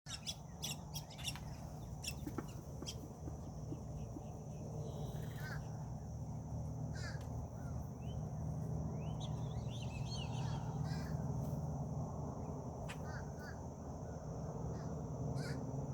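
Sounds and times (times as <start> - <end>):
birds chirping: 0.1 - 11.6
steady low hum: 0.1 - 15.9.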